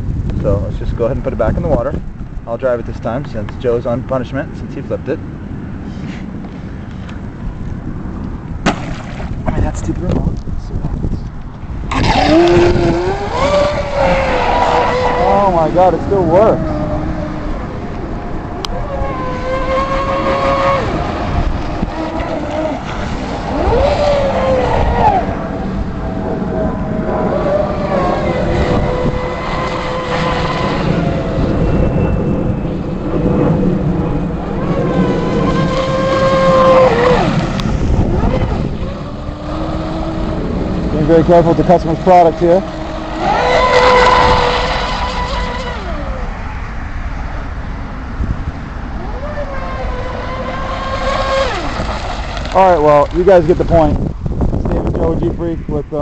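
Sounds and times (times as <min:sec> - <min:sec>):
electric motor whining: 0:11.9 - 0:33.0, 0:34.0 - 0:46.4, 0:49.0 - 0:53.8.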